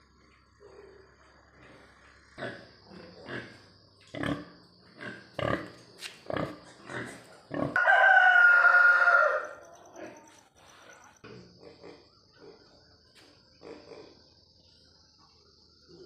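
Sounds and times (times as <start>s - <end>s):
pigs grunting: 0.6s - 7.8s, 9.2s - 12.9s, 13.5s - 14.4s
rooster crowing: 7.8s - 10.3s.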